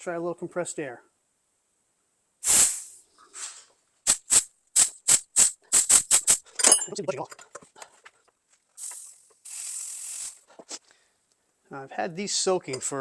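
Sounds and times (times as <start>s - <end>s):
compressed air blasts: 2.4s - 6.5s, 8.8s - 10.5s.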